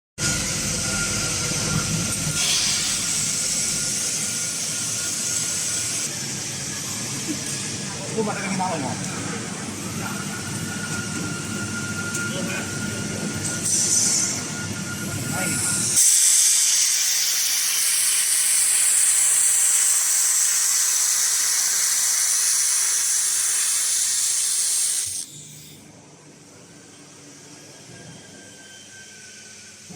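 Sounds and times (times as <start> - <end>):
laser welding machine hiss: 0.2 - 6.5, 11.9 - 25.8.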